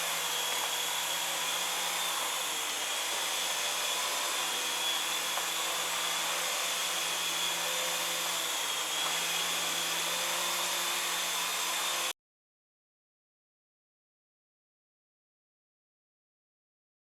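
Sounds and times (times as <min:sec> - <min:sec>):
toy helicopter rotors whirring: 0:00.0 - 0:12.1.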